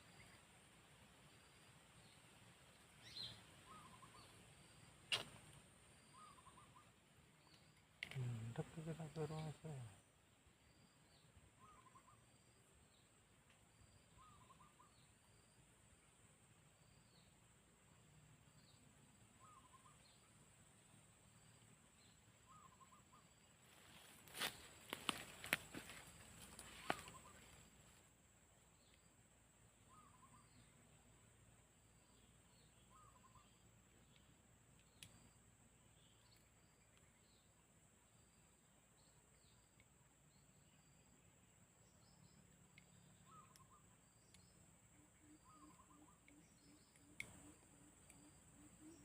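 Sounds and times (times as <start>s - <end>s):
faint high chirps: 1.3s - 10.0s, 21.3s - 28.0s, 29.8s - 31.2s, 31.8s - 37.6s, 41.9s - 49.0s
distant birds calling: 2.9s - 10.0s, 10.7s - 12.6s, 13.8s - 15.6s, 21.4s - 28.0s, 29.8s - 31.0s, 32.0s - 34.3s, 42.0s - 49.0s.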